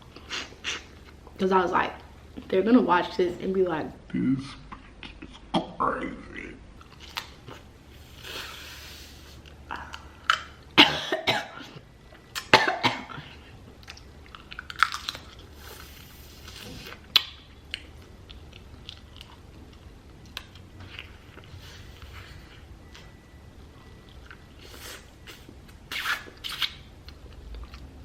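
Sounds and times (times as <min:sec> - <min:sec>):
person chewing: 0:13.2 - 0:23.0, 0:23.8 - 0:28.0.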